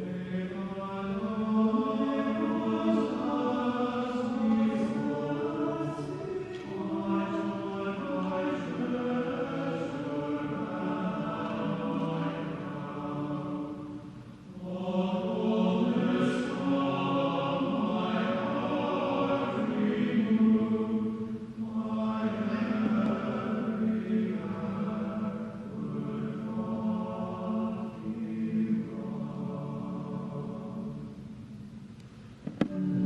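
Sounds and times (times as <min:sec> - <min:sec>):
choir singing a hymn: 0:00.0 - 0:31.5.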